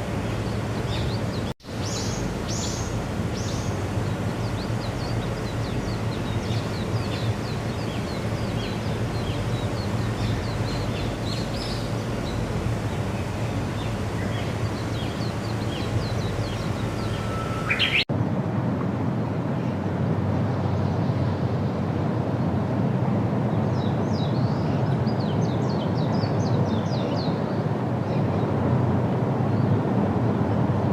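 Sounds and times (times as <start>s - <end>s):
small birds chirping: 0.0s - 18.1s.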